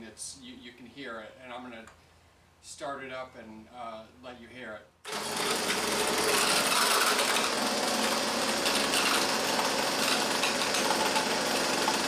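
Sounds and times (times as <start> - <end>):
leaf blower idling with rattle: 5.1 - 12.0.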